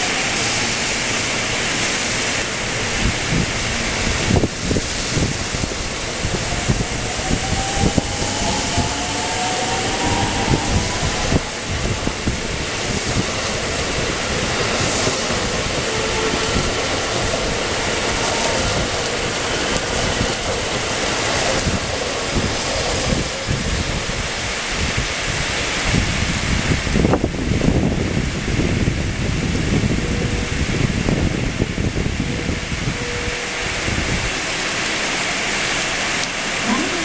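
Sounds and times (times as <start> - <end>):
heavy rain: 0.0 - 37.0
wind buffeting microphone: 0.0 - 37.0
electric train motor whine: 5.1 - 23.3.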